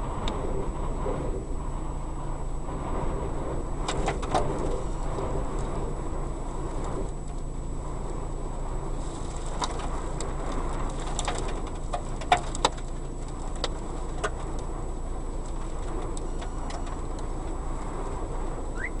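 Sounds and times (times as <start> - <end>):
strong wind blowing: 0.0 - 19.0
clicking and rattling: 9.3 - 14.7.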